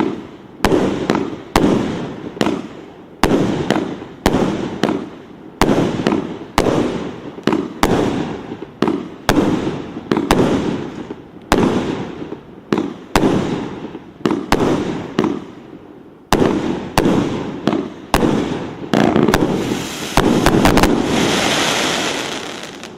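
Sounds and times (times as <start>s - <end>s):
dense firework crackle: 16.3s - 22.9s
firework shells bursting: 19.0s - 22.9s.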